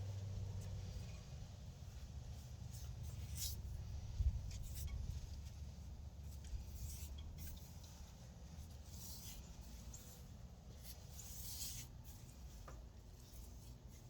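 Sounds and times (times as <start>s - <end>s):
paintbrush scratching on wood: 6.6s - 14.0s.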